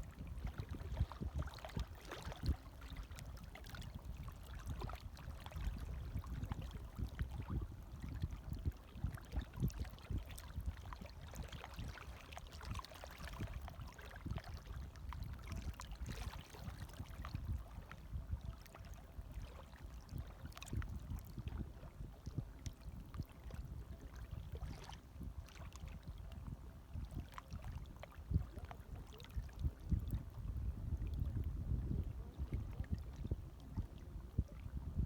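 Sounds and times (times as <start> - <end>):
small waves lapping: 0.0 - 17.9
low wash of water: 0.0 - 35.0
water splashes and trickles: 0.0 - 35.0.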